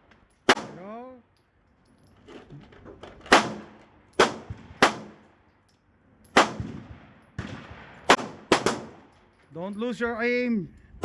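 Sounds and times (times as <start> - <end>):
pistol shots with echo: 0.5 - 0.8, 3.3 - 5.2, 6.4 - 9.1.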